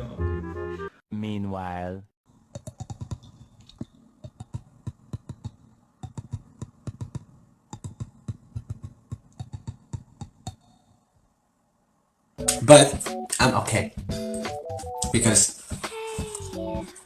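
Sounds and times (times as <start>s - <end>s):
rapid irregular clicks and taps: 2.5s - 10.9s.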